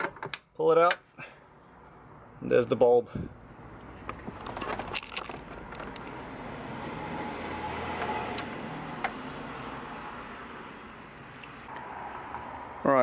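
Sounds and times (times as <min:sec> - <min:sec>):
vehicle passing with rushing noise: 0:06.0 - 0:13.0.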